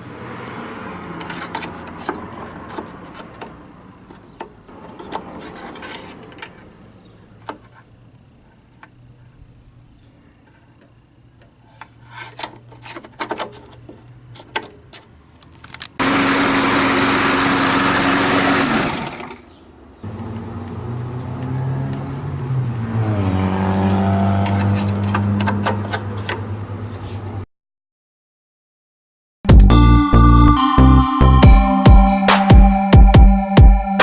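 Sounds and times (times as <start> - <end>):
lawn mower engine starting: 16.0 - 20.8.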